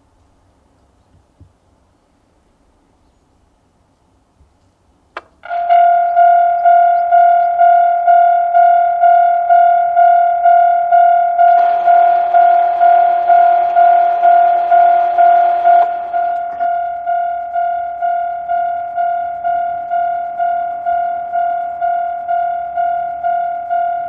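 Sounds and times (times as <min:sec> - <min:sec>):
electronic level crossing bell: 0:05.4 - 0:24.0
loud harsh noise: 0:05.4 - 0:24.0.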